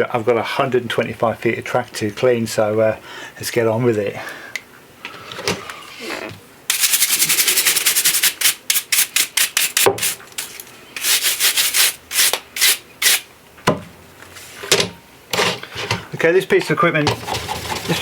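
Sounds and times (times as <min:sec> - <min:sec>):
scrubbing model railway track: 0:06.7 - 0:13.2, 0:17.2 - 0:18.0.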